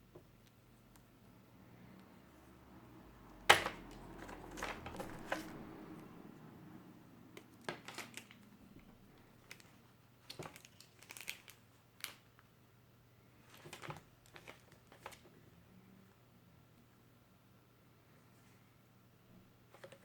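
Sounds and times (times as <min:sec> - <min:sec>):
packaging crinkling: 0:07.7 - 0:08.5, 0:09.5 - 0:12.2.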